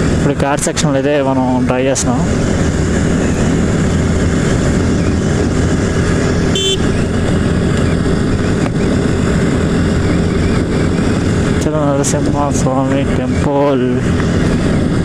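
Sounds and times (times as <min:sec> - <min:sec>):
motorcycle running: 0:00.0 - 0:15.0
short horn beep: 0:06.5 - 0:06.9.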